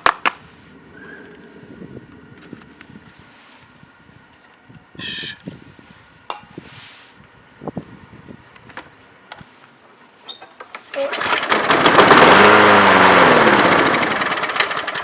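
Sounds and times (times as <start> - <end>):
lawn mower engine turning over: 8.6 - 15.0.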